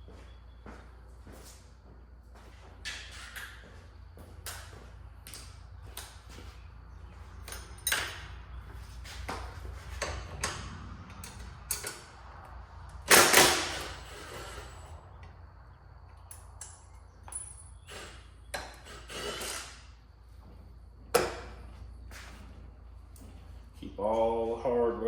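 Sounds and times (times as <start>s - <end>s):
hand tools clanking on metal: 7.5s - 8.4s.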